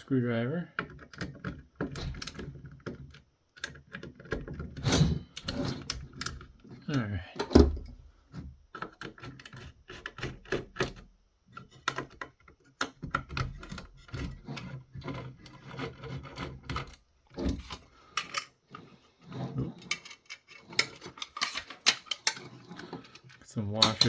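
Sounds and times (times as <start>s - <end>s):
screwdriver clicking and scraping on metal: 0.8s - 24.0s.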